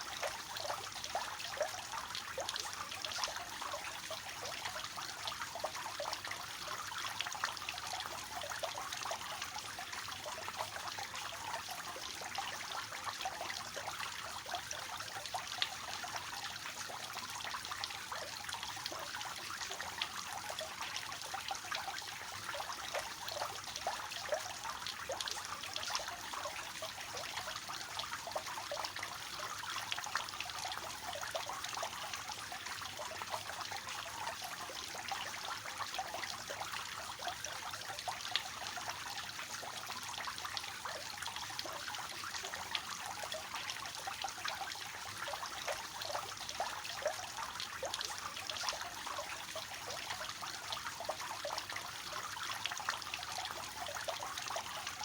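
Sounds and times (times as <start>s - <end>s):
fountain water splashing: 0.0s - 1.6s.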